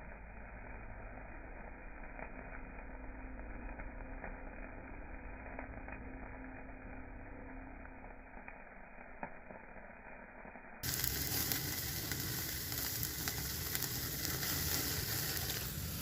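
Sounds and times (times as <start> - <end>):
chicken sizzling and crackling: 0.0 - 16.0.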